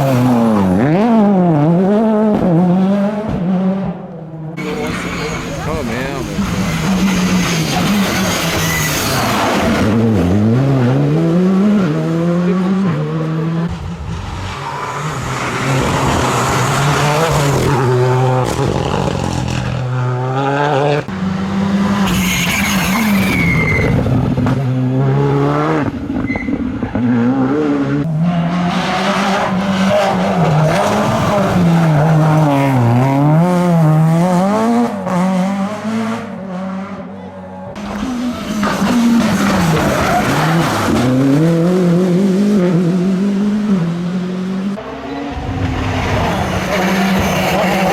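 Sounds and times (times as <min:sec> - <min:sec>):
rally car engines revving: 0:00.0 - 0:47.9
tyre squeal: 0:06.6 - 0:09.6, 0:22.1 - 0:24.0, 0:26.2 - 0:26.6.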